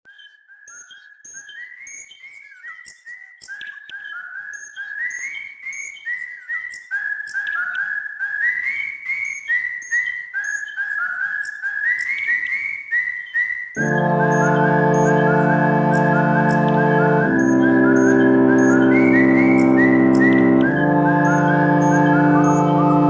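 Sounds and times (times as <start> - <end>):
birds chirping whistled notes: 0.1 - 23.0.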